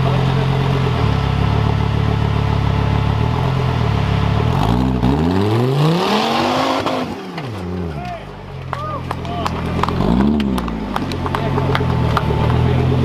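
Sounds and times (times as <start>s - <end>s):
engine running and revving: 0.0s - 7.9s, 9.4s - 13.0s.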